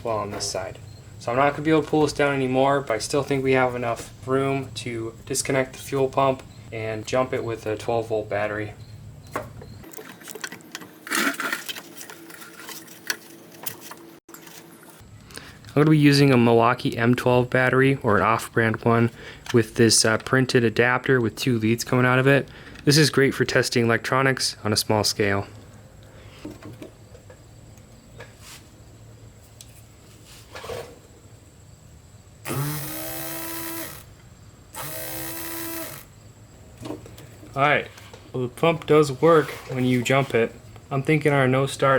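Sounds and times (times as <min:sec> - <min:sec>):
scraping rustle: 0:29.4 - 0:31.1, 0:39.2 - 0:40.4
electric fuel pump buzzing: 0:32.4 - 0:36.3.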